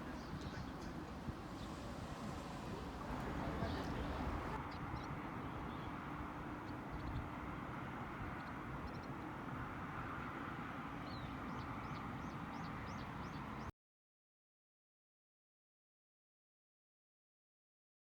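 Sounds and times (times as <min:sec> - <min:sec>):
small birds chirping: 0:00.0 - 0:05.9.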